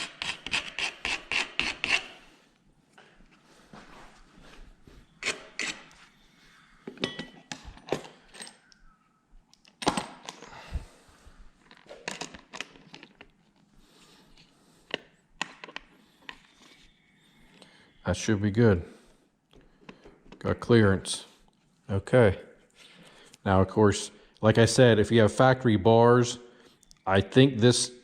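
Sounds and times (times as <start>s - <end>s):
metal parts clinking and knocking: 6.9s - 8.7s, 11.6s - 13.3s.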